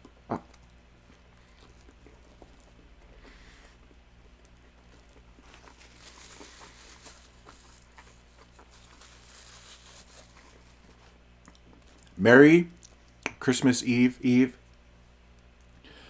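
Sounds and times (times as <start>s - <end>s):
person chewing food: 0.0s - 12.2s, 12.8s - 13.2s
low electrical hum: 0.0s - 16.0s.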